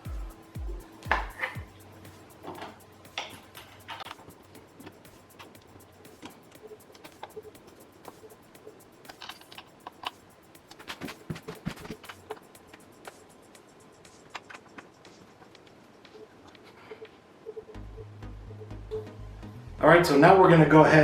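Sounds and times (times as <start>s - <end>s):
allen wrench clicking and tapping: 2.4s - 10.9s.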